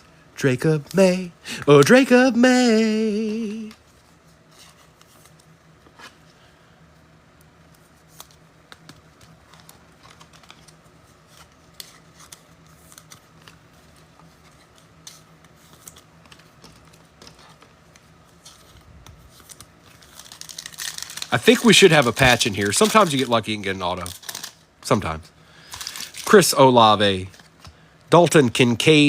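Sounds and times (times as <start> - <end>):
trading cards clicking and scraping: 7.7 - 23.4, 24.0 - 24.6.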